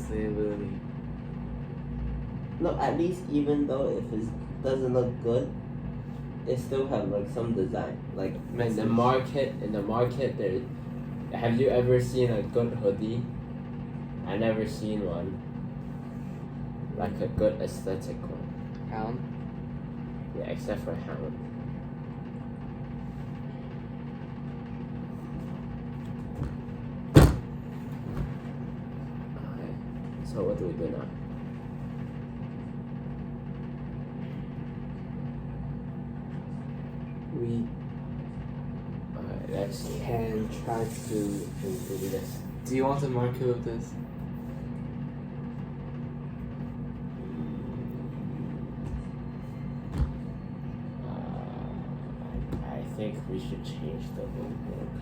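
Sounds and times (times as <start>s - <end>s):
low mechanical hum: 0.0s - 55.0s
sharp knocks: 26.3s - 28.4s
sharp knock: 27.2s - 27.5s.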